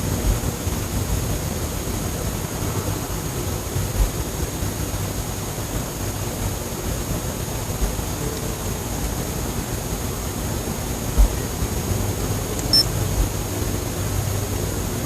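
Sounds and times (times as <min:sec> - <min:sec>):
low engine-like rumbling drone: 0:00.0 - 0:15.0
steady rushing noise: 0:00.0 - 0:15.0
thin high whine: 0:12.6 - 0:13.0.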